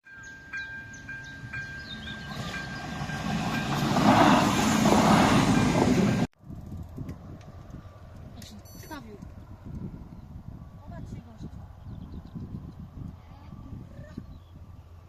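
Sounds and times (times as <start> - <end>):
train passing on rails: 0.0 - 6.3
high falling bird chirps: 0.2 - 3.4.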